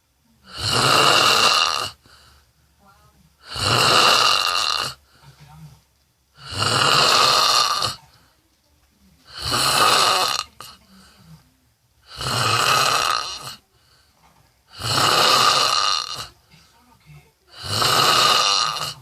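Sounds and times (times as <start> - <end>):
person snoring harshly: 0.5 - 2.0, 3.4 - 5.0, 6.4 - 8.0, 9.3 - 10.6, 12.1 - 13.6, 14.7 - 16.3, 17.6 - 19.0.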